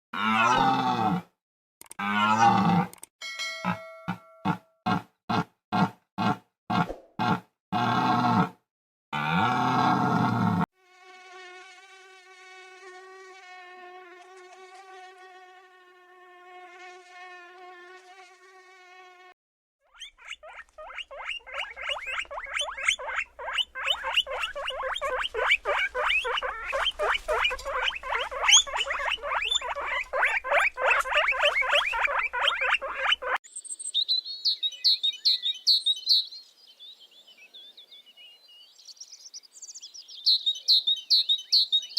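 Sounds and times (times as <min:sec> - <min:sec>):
guinea pig squeaks: 0:19.8 - 0:33.4
bird chirping: 0:19.9 - 0:41.9.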